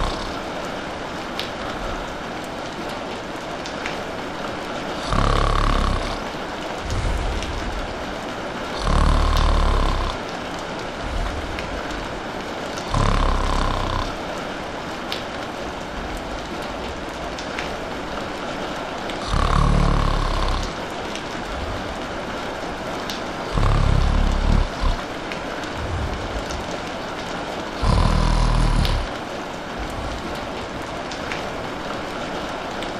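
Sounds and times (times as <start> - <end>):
person snoring: 0.0 - 0.4, 5.0 - 7.8, 8.7 - 10.2, 12.8 - 14.2, 19.2 - 20.8, 23.5 - 25.1, 25.7 - 27.0, 27.7 - 29.2, 29.8 - 30.6
soft breath out: 0.0 - 0.4, 5.1 - 7.8, 23.6 - 25.0, 27.8 - 29.1
steady rain hiss: 0.0 - 32.9.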